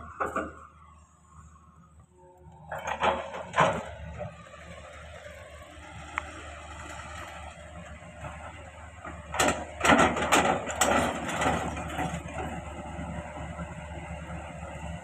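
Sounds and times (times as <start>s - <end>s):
excavator engine running: 0.0s - 15.0s
sharp knocks and scraping: 2.7s - 4.3s.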